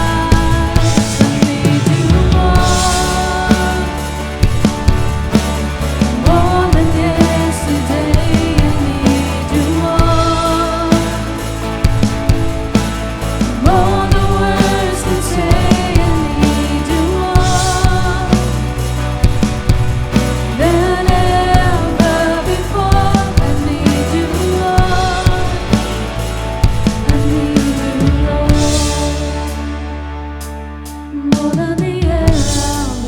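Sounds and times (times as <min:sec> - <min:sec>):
person singing: 0:00.0 - 0:19.4, 0:20.5 - 0:30.0, 0:31.0 - 0:33.0
band playing praise music: 0:00.0 - 0:33.0.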